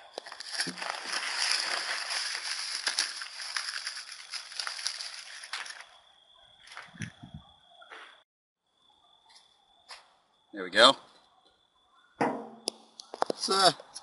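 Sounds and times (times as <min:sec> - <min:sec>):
sand being dug and poured: 0:00.0 - 0:05.7.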